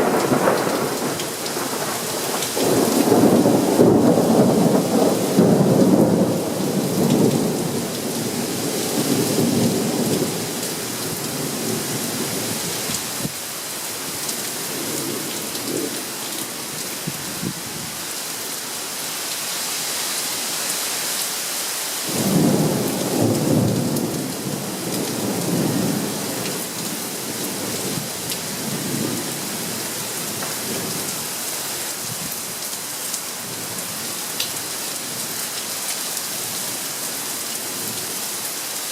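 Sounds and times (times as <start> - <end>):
rolling thunder: 0.0 - 11.8, 22.1 - 29.2
rain falling: 0.0 - 38.9.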